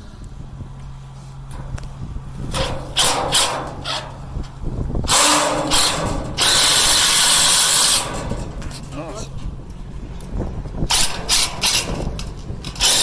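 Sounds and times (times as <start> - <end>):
power drill driving screws into steel: 5.1 - 8.4, 10.9 - 13.0.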